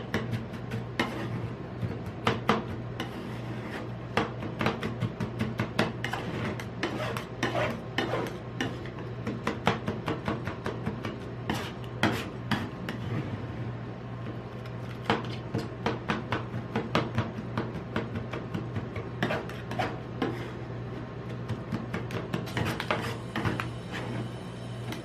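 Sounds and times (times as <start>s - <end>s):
steady low hum: 0.0s - 25.0s
metal spatulas scraping and tapping: 0.1s - 1.5s, 6.0s - 9.0s.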